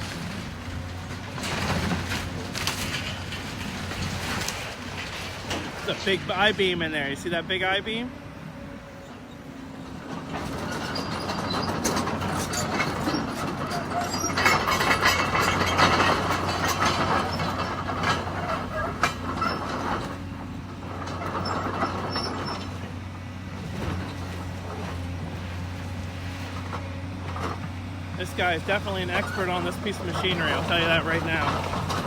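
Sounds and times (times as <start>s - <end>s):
metal and debris crunching: 0.0s - 7.8s, 10.2s - 22.8s, 25.9s - 32.0s
excavator engine running: 0.0s - 32.0s.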